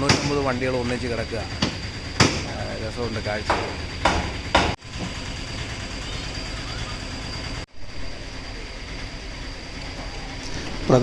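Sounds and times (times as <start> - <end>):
vehicle engine idling: 4.8 - 11.0.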